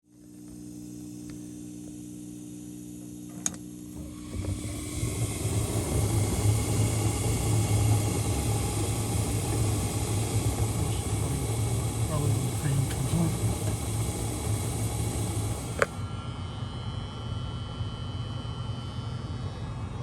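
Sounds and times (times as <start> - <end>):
furnace hum: 0.0 - 20.0
furnace burner rushing rumble: 0.1 - 20.0
furnace ignition click: 3.2 - 16.0.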